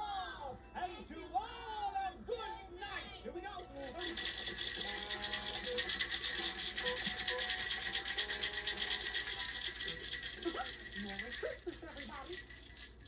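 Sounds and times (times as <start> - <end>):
jingle bells shaking: 3.7 - 13.0.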